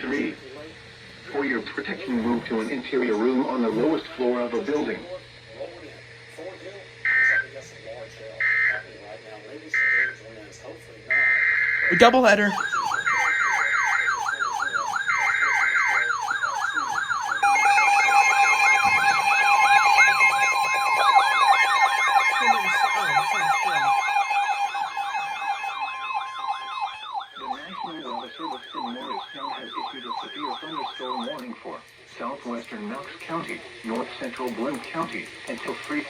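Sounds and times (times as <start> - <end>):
electronic siren yelping: 11.1 - 31.4
stuttering high tone: 16.8 - 27.2.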